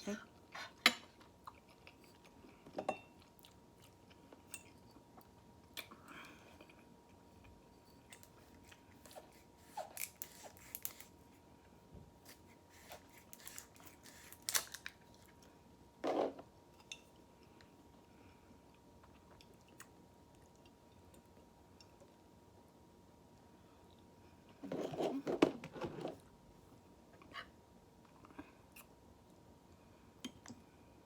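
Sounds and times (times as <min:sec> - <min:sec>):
person chewing food: 0:01.2 - 0:02.6.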